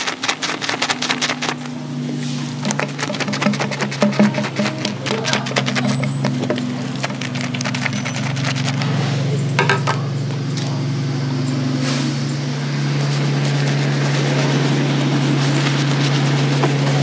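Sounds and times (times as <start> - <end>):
razor scraping stubble: 0.0 - 1.7, 2.6 - 9.0
steady low hum: 0.0 - 17.0.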